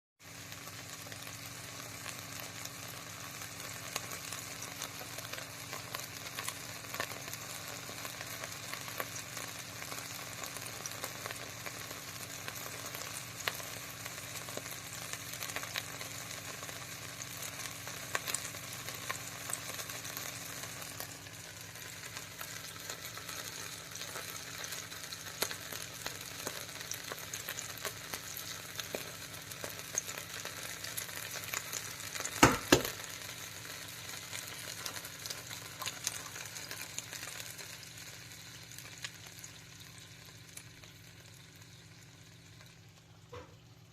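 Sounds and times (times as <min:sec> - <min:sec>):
butter sizzling in frying pan: 0:00.2 - 0:43.9.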